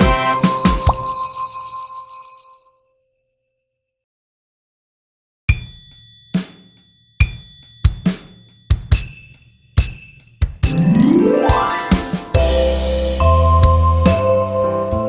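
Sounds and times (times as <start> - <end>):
drum count-in beats: 0.0 - 1.2, 7.2 - 13.8
backing track chord with bell tones: 10.7 - 14.0.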